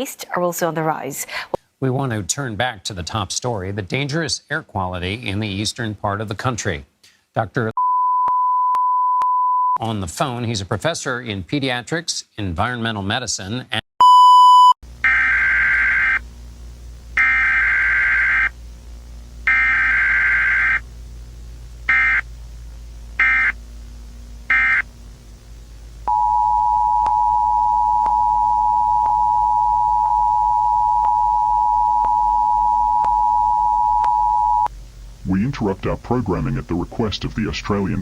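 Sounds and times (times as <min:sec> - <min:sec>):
screechy digital data bursts: 0:15.0 - 0:16.2, 0:17.2 - 0:18.6, 0:19.5 - 0:20.8, 0:21.9 - 0:22.3, 0:23.2 - 0:23.6, 0:24.5 - 0:24.9
two-tone attention signal: 0:26.1 - 0:34.7.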